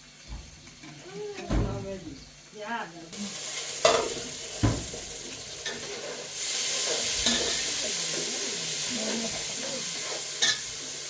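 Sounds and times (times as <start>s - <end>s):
food sizzling in a frying pan: 0.0s - 11.0s
utensil knocking on pan: 3.8s - 5.8s.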